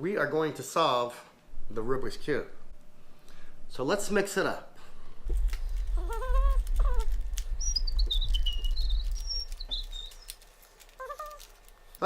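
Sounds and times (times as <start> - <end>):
bird-like chirps: 7.5 - 10.4.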